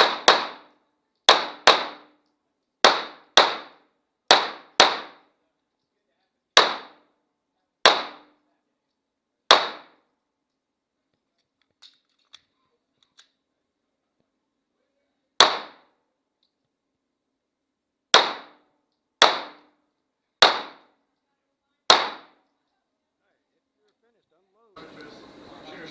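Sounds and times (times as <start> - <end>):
pistol shots: 0.0 - 2.2, 2.8 - 5.3, 6.6 - 7.1, 7.8 - 8.4, 9.5 - 10.0, 15.4 - 15.9, 18.1 - 18.6, 19.2 - 19.8, 20.4 - 21.0, 21.9 - 22.4.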